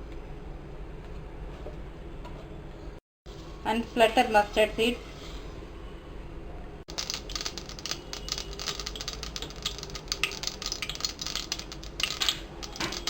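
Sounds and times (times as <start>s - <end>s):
mustard seeds popping in hot oil: 6.9s - 13.0s.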